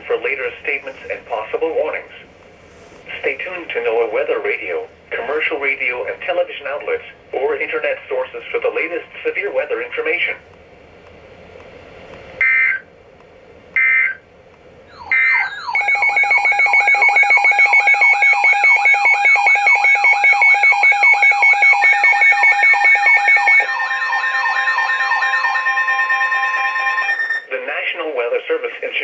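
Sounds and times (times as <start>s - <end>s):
warbling alarm siren: 12.4s - 12.9s, 13.8s - 14.2s, 14.9s - 27.5s
digital data screeches: 14.9s - 24.0s
steady alert tone: 14.9s - 27.5s
steady beeping tones: 14.9s - 27.6s.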